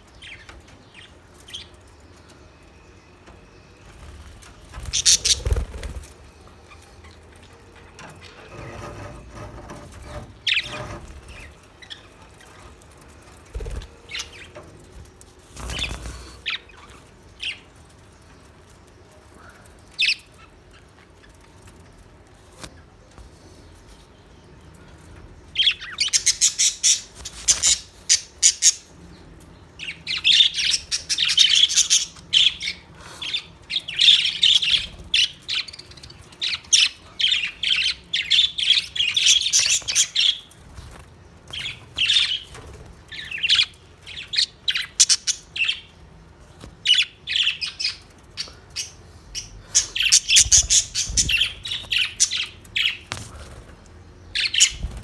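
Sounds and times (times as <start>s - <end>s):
budgerigars chirping: 4.8s - 6.1s, 25.6s - 28.9s, 29.8s - 35.8s, 36.4s - 40.5s, 43.1s - 45.9s, 46.8s - 53.1s, 54.3s - 55.0s.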